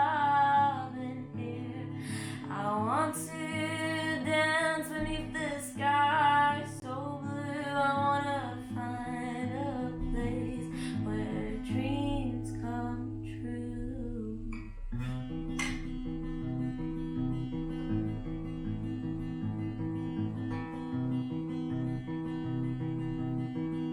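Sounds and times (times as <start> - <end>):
person singing: 0.0 - 14.8
strummed acoustic guitar: 0.0 - 23.9.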